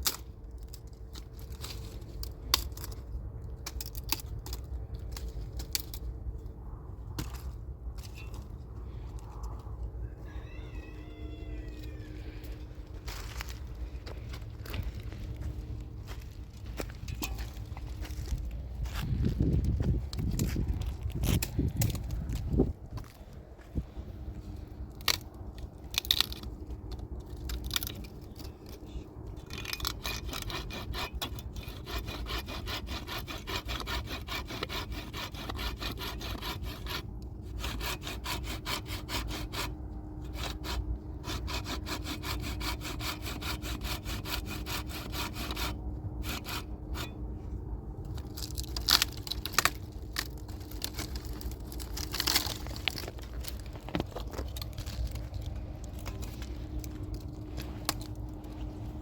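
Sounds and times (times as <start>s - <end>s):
saw cutting through wood: 29.5s - 47.2s.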